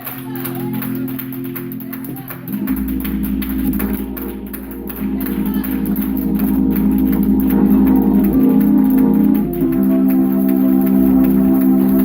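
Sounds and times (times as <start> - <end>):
gospel organ chords: 0.0 - 12.0
low bass note: 2.5 - 12.0.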